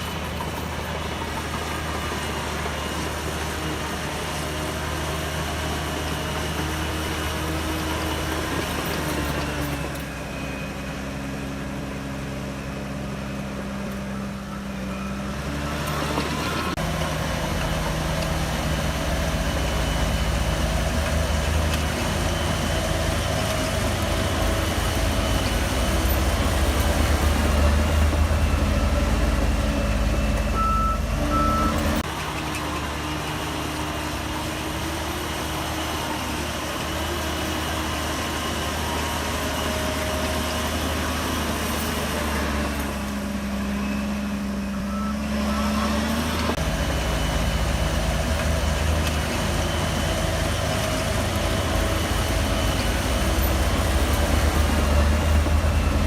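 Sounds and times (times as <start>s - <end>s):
bulldozer diesel engine running: 0.0s - 56.0s
reversing alarm beeping: 9.8s - 16.8s, 18.7s - 32.0s, 43.4s - 46.5s.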